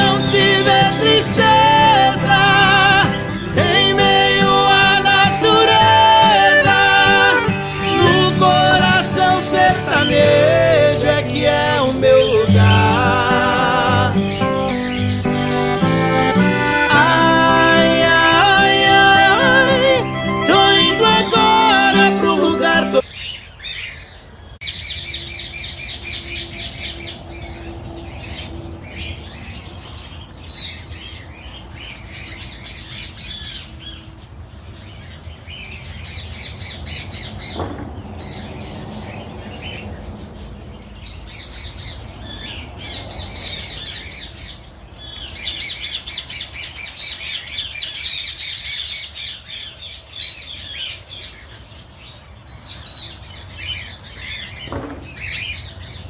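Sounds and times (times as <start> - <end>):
birds squawking: 0.0 - 24.0.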